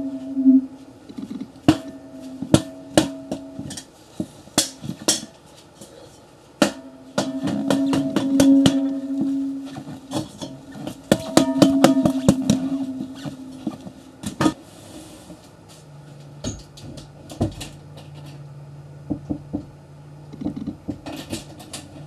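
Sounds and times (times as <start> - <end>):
sharp taps with ringing tone: 6.7 - 14.6.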